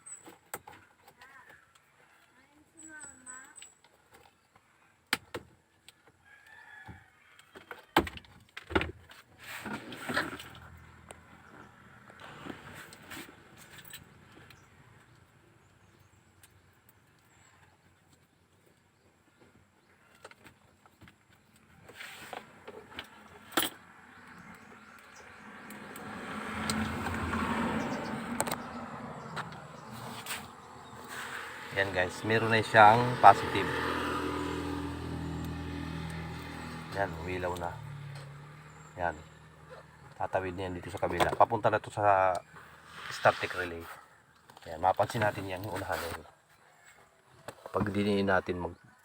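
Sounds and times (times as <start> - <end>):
vehicle passing by: 10.0 - 15.3, 22.3 - 44.1.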